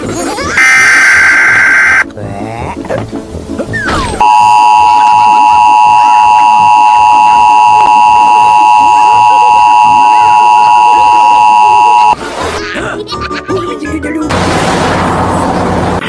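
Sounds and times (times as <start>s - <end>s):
two-tone alert sound: 4.2s - 12.2s.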